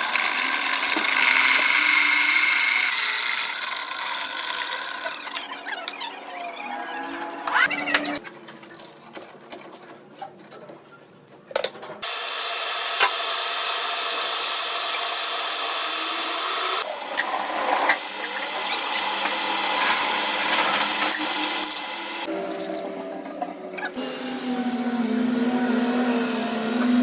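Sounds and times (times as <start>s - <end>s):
power tool running: 0.0s - 5.6s, 12.0s - 22.4s, 24.0s - 27.0s.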